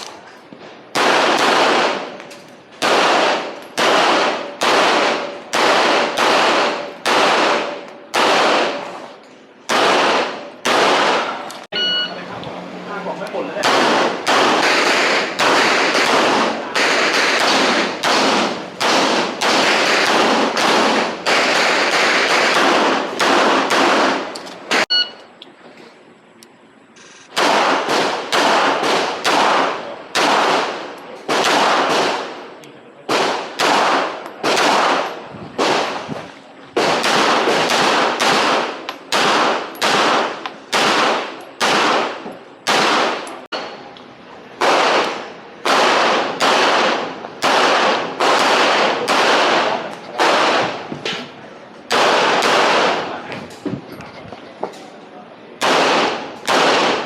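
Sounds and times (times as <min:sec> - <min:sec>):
handgun shots with echo: 0:44.6 - 0:50.8, 0:55.6 - 0:57.0.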